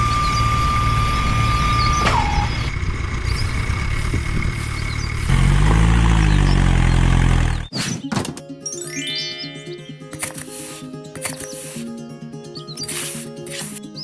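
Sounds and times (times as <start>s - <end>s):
engine rumbling: 0.0s - 7.7s.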